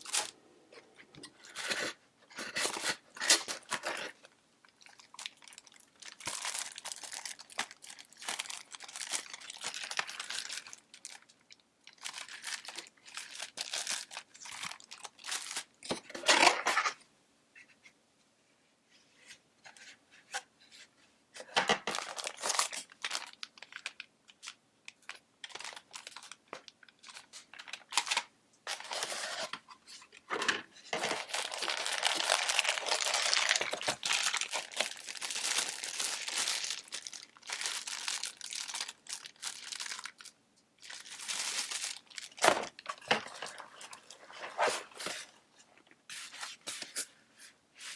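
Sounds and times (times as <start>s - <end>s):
packaging crinkling and tearing: 0.0s - 0.4s, 1.2s - 17.0s, 21.8s - 29.6s, 31.0s - 45.4s.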